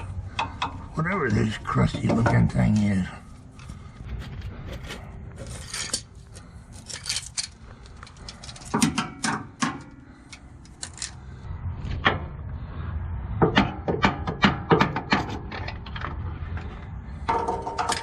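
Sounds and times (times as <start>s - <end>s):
metallic knocks on starter motor: 13.4s - 15.4s.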